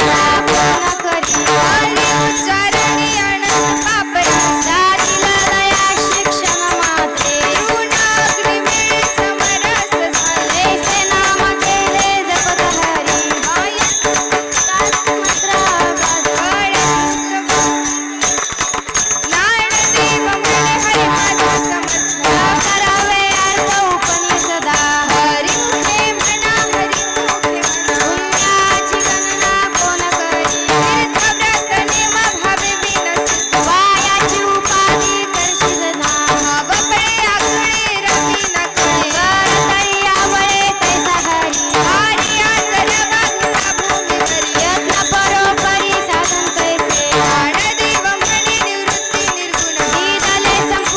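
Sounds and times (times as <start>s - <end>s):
jingling percussion: 0.0s - 50.9s
wavering melody: 0.0s - 50.9s.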